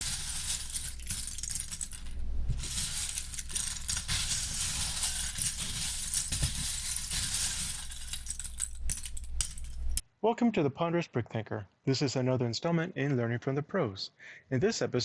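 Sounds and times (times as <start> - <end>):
plastic bricks clattering: 0.0 - 10.0.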